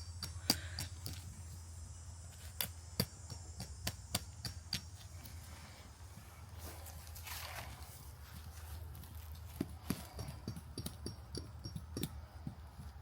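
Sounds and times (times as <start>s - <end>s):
tent poles knocking and clicking: 8.4s - 13.0s.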